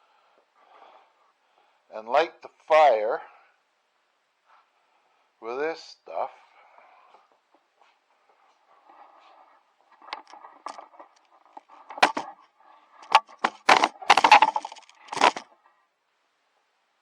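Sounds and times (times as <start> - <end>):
dry kindling cracking and clattering: 8.8 - 15.6.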